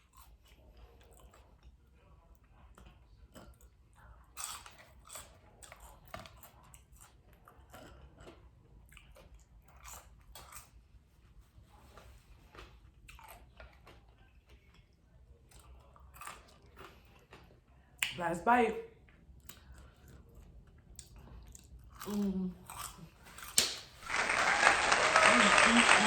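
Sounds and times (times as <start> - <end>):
person chewing and biting: 12.0 - 14.9, 15.5 - 18.2, 19.4 - 24.1.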